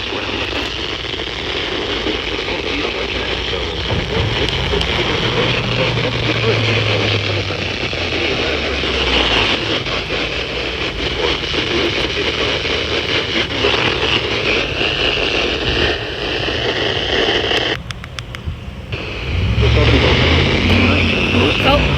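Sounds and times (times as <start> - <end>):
car cabin rushing noise: 0.0 - 21.9
radio hiss: 0.0 - 21.9
sharp clicks: 17.4 - 18.5.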